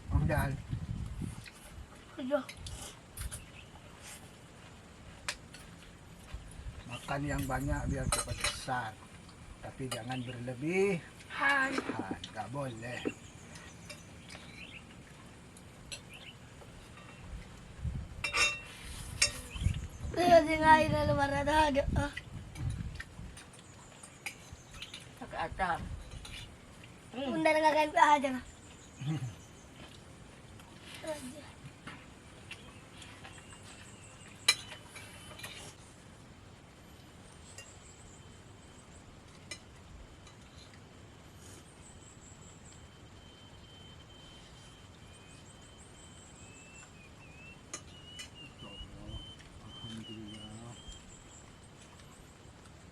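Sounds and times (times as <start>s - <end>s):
cutlery clinking on plates: 7.3s - 8.7s, 18.2s - 19.6s, 34.4s - 35.8s
faint bird chirps: 18.2s - 30.0s, 32.3s - 35.9s, 40.2s - 52.6s.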